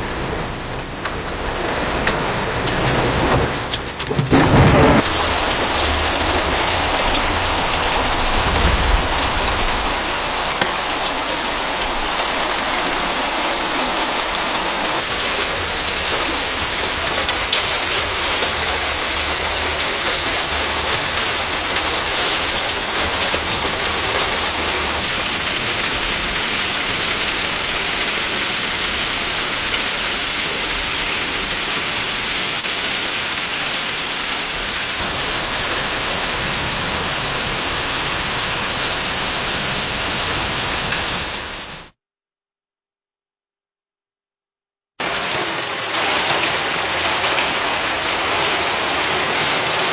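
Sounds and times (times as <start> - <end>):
low rumble: 0.0 - 14.6
rain pattering on a window: 0.0 - 41.9, 45.0 - 49.9.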